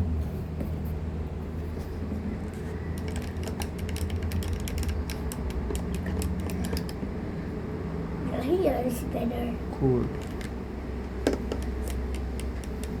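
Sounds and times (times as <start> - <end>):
stirring rod clicking on container: 3.0 - 7.0, 11.3 - 13.0.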